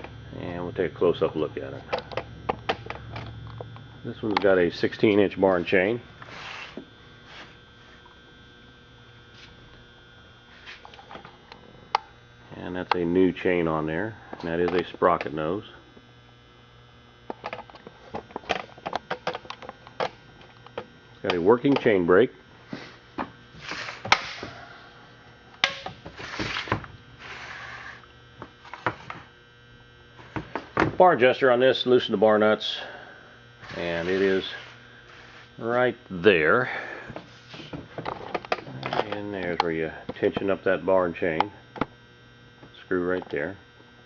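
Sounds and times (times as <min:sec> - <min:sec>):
handling noise: 0:00.0 - 0:07.4
faint steady hum: 0:00.0 - 0:44.0.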